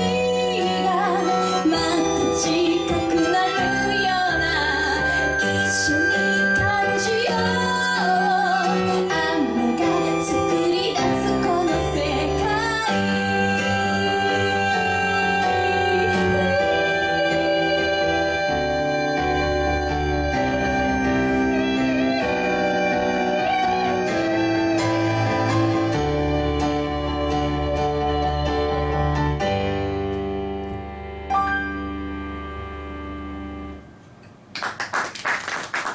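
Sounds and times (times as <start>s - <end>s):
woman singing with vibrato: 0.0s - 29.1s
band playing piano-led chords: 0.0s - 33.9s
audience applause: 34.5s - 35.9s.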